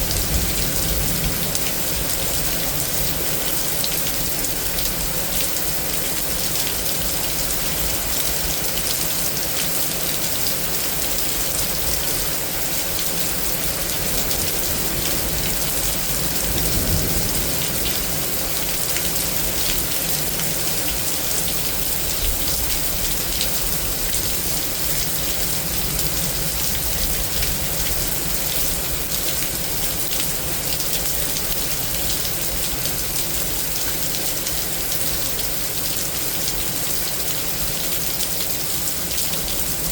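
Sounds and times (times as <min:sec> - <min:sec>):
low thunder rumble: 0:00.0 - 0:03.2
heavy rain pattering: 0:00.0 - 0:39.9.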